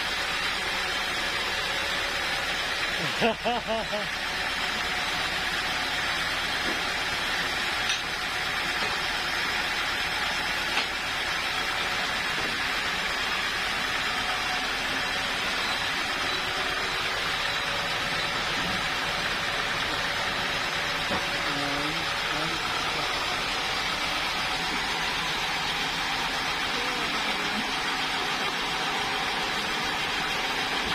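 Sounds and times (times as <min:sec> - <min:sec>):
sawmill machinery hissing: 0:00.0 - 0:30.9.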